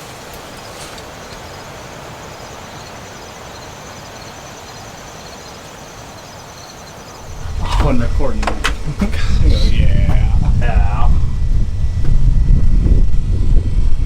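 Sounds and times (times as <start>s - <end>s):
insects chirping faintly: 0.0s - 14.0s
outdoor background noise: 0.0s - 14.0s.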